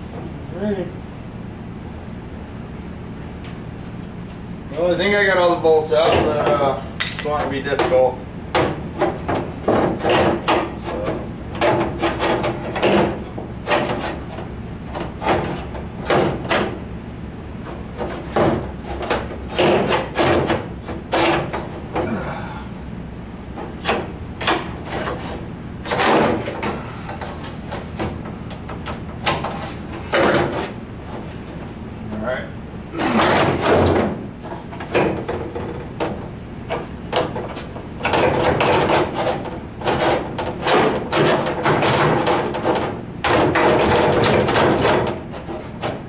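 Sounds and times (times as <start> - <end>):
metal parts knocking and rattling: 6.0 - 16.7, 23.6 - 31.6, 33.1 - 46.0.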